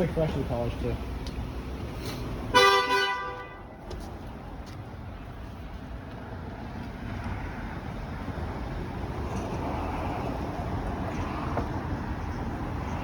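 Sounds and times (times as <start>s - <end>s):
car horn honk: 2.5s - 3.7s.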